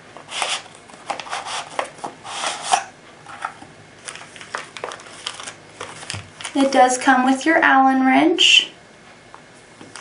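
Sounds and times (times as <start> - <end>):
packaging rustling and scraping: 0.3 - 6.8.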